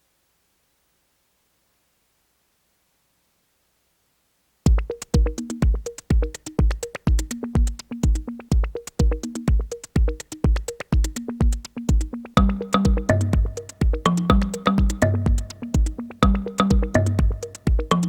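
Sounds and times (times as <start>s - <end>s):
drum machine beat: 4.7s - 18.0s
repeating synthesizer notes: 12.4s - 18.0s.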